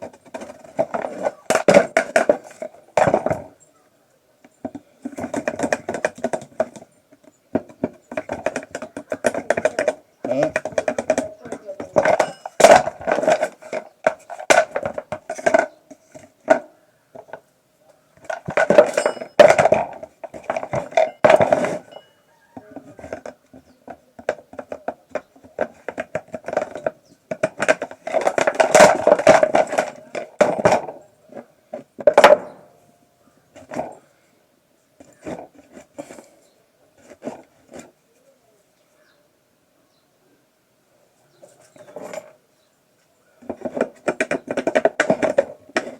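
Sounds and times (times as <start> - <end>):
tools clinking and knocking: 8.1 - 15.8, 18.2 - 23.3.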